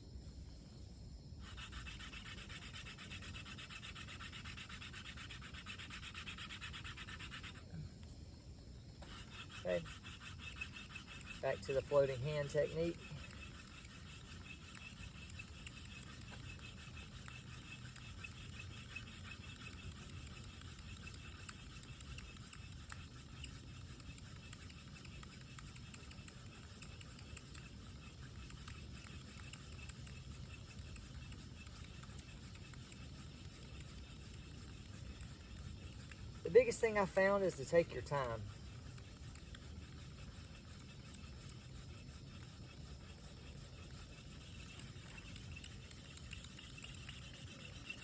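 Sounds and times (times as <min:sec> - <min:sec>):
wooden spindle rubbing on wood: 0:01.4 - 0:07.8, 0:09.0 - 0:48.0.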